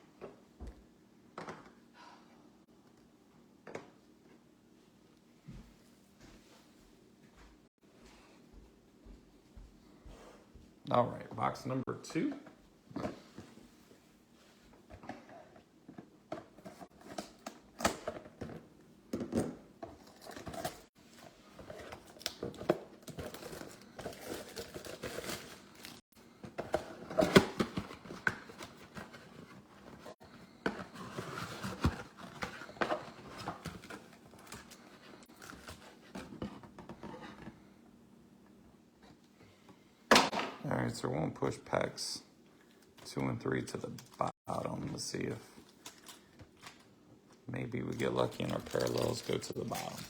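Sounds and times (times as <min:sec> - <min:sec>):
packaging crinkling and tearing: 0:21.7 - 0:26.0, 0:45.6 - 0:46.9, 0:47.9 - 0:50.0.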